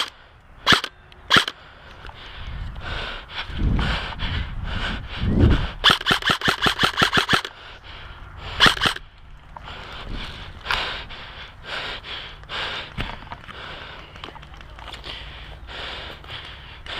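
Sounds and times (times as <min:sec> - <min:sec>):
airsoft rifle firing bursts: 0:00.7 - 0:01.6, 0:05.8 - 0:07.5, 0:08.6 - 0:09.0.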